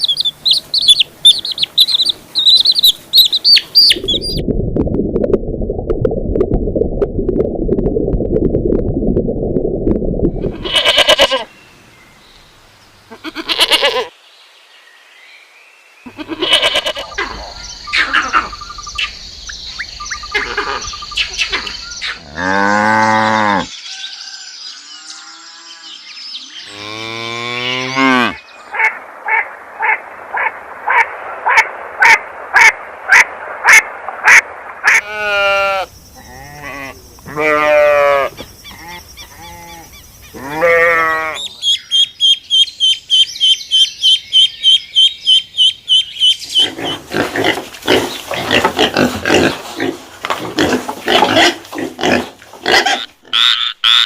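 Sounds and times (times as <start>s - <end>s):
animal calls: 16.1s - 19.0s, 20.1s - 22.5s.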